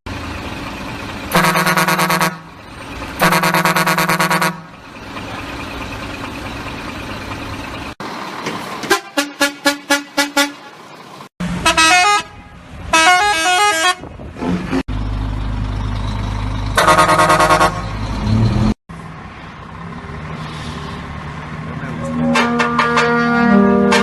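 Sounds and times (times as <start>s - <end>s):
heavy vehicle engine running: 0.1s - 24.0s
loud chord horn blast: 1.3s - 2.5s, 22.2s - 24.0s
musical vehicle horn tune: 1.3s - 2.6s, 3.2s - 4.8s, 8.8s - 10.8s, 11.6s - 14.1s, 16.8s - 17.9s, 22.1s - 24.0s.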